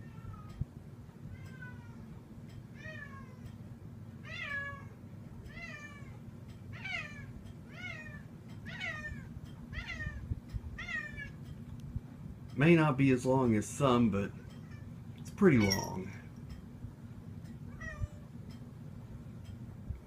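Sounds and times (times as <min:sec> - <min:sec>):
box fan hum: 0:00.0 - 0:20.0
cat meowing: 0:04.2 - 0:06.2, 0:06.8 - 0:11.4, 0:17.7 - 0:18.3.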